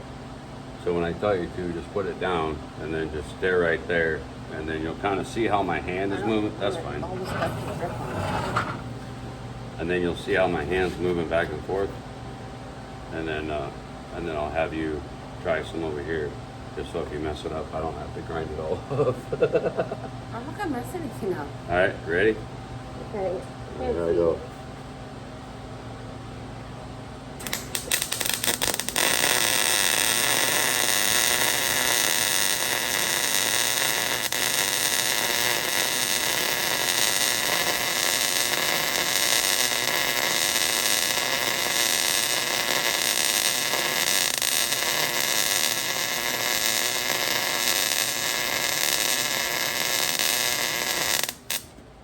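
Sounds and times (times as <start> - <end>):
arc welding crackling hiss: 27.4 - 51.7.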